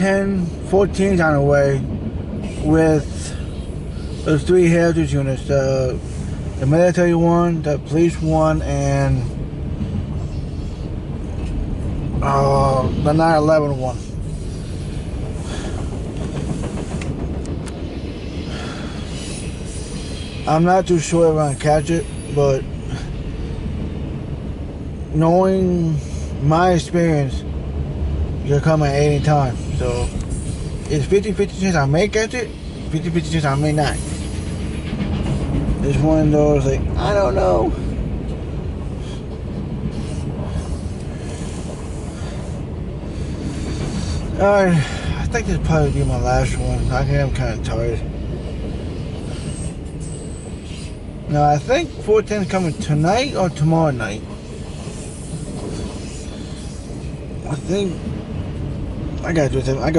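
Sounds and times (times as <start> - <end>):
train wheels rumbling on track: 0.0 - 59.9
hiss: 13.9 - 17.2, 17.8 - 22.3, 54.5 - 57.9.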